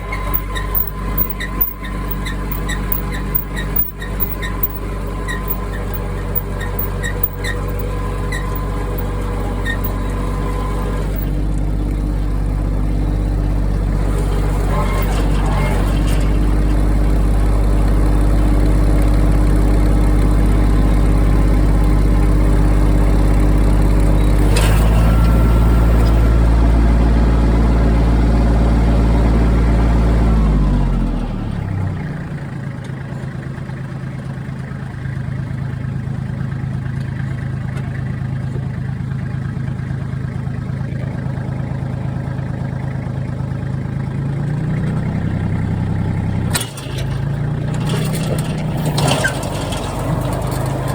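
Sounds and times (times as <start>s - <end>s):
tractor engine running: 0.0s - 50.9s.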